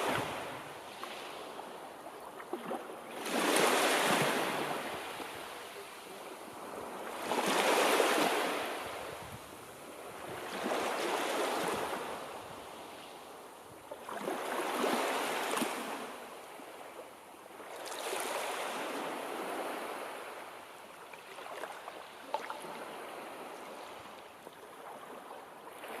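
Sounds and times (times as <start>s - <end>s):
waves breaking: 0.0s - 1.8s, 2.4s - 9.4s.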